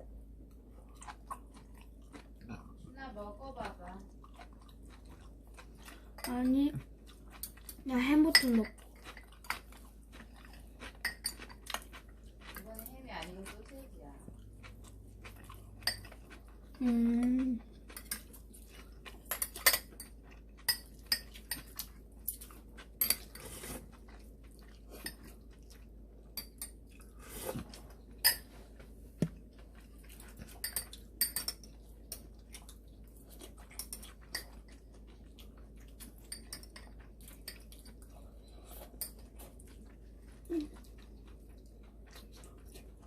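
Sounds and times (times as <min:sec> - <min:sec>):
cutlery clinking on dishes: 0:19.3 - 0:20.1, 0:23.0 - 0:23.7, 0:28.2 - 0:28.6, 0:30.4 - 0:32.2, 0:36.2 - 0:38.0.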